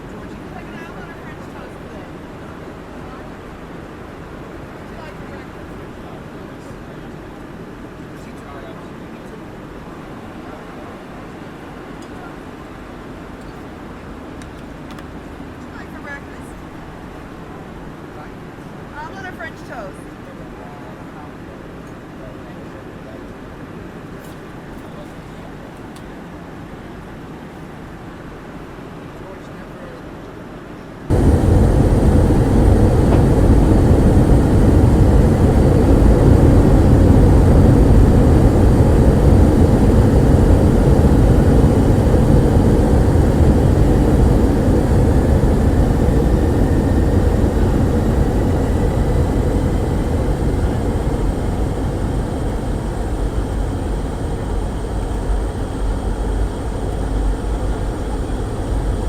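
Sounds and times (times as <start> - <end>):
faint rising whine: 31.1 - 59.0
jet engines roaring: 31.1 - 59.0.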